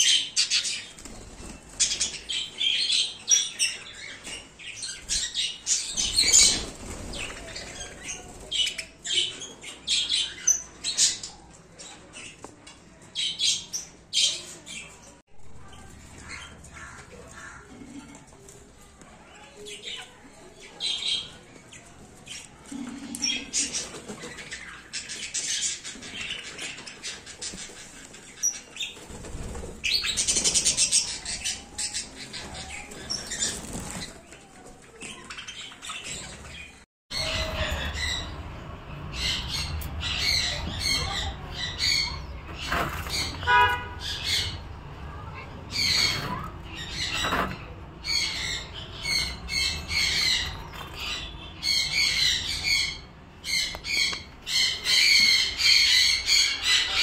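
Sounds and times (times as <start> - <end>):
wings flapping: 0.8 - 2.3, 5.9 - 8.8, 28.8 - 34.4.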